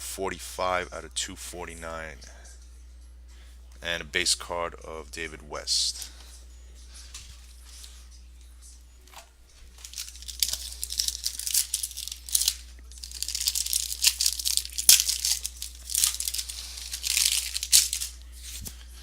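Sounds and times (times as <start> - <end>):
wrapper being torn and crinkled: 9.7 - 18.7.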